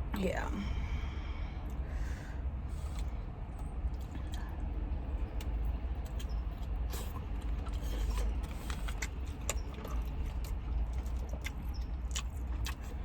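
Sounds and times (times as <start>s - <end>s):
steady low rumble: 0.0s - 13.0s
chewing with wet mouth clicks: 3.9s - 13.0s.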